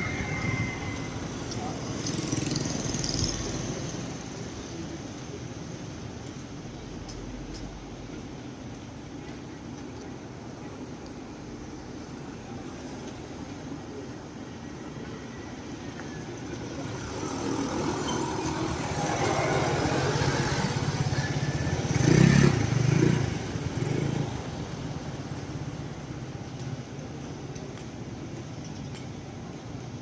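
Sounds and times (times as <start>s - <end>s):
vehicle passing by: 16.6s - 25.4s.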